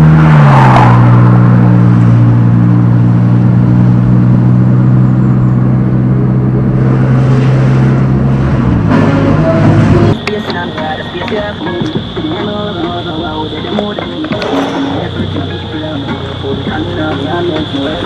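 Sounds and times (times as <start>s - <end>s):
vehicle engine humming: 0.0s - 18.0s.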